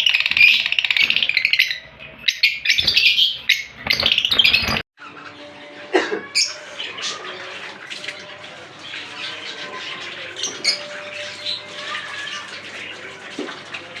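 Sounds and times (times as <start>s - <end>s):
sharp loud bird calls: 0.0s - 5.4s
lovebirds chirping and squawking: 0.0s - 14.0s.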